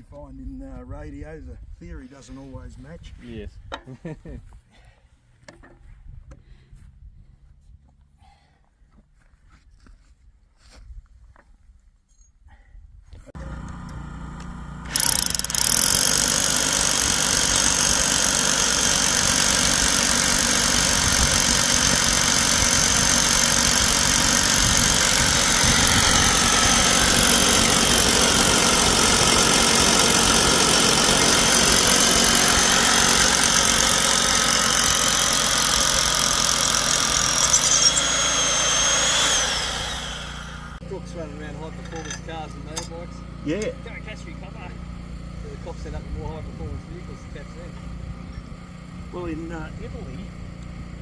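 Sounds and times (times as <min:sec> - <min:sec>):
motor running loudly: 0:13.4 - 0:51.0.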